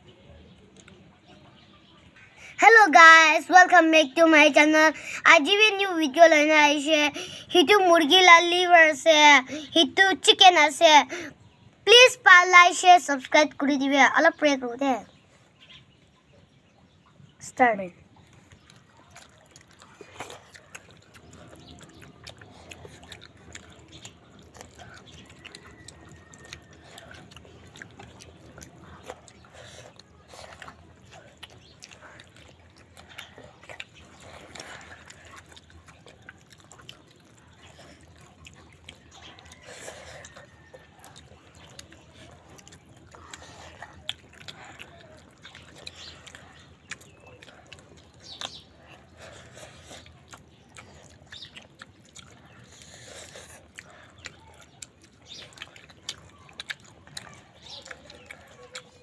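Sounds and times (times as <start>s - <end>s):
wet chewing: 0.0s - 59.0s
lip smacks: 18.1s - 59.0s
mouth clicks: 18.2s - 59.0s.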